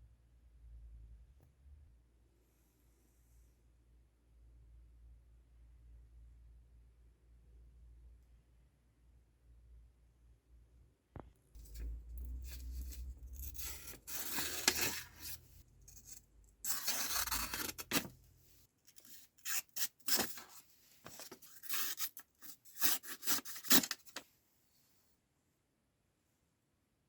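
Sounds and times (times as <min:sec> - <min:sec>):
low hum: 0:11.6 - 0:14.1
scraping strokes on knife: 0:11.6 - 0:18.1, 0:18.9 - 0:24.2.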